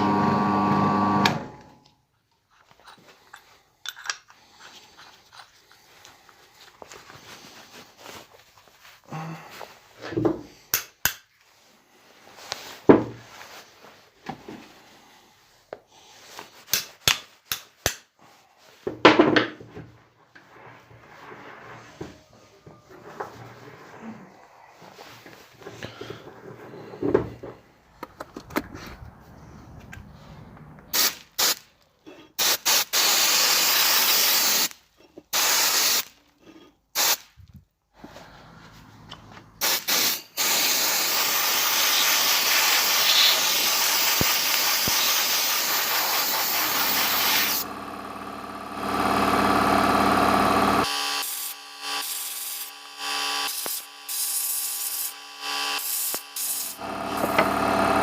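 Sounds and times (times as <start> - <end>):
pressurised spray hissing: 30.9 - 31.6, 32.4 - 34.7, 39.6 - 47.7, 55.8 - 57.4.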